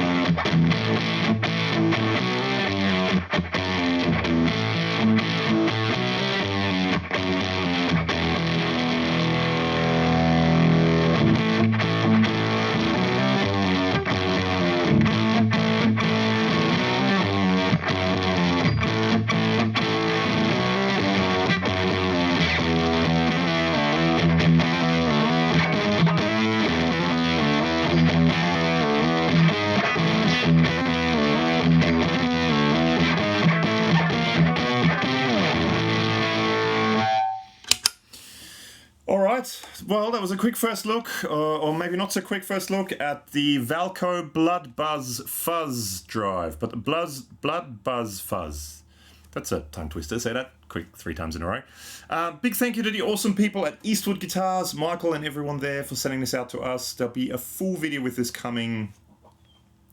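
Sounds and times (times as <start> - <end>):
distorted electric guitar: 0.0 - 37.8.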